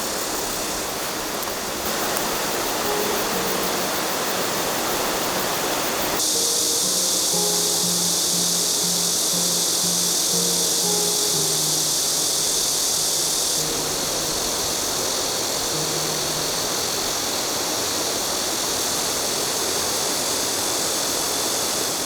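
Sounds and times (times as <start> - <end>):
faint low held notes: 1.8 - 17.5.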